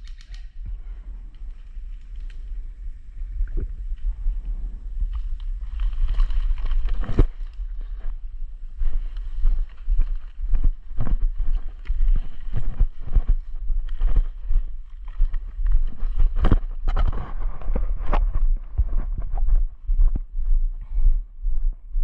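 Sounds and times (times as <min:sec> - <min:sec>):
wind on microphone: 0:00.0 - 0:22.0
footsteps on field: 0:05.2 - 0:22.0.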